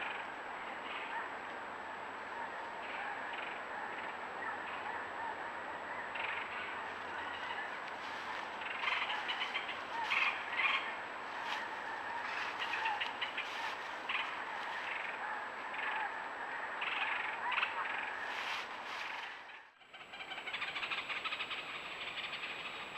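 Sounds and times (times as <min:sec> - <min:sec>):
chorus of small animal calls: 0:02.2 - 0:22.9.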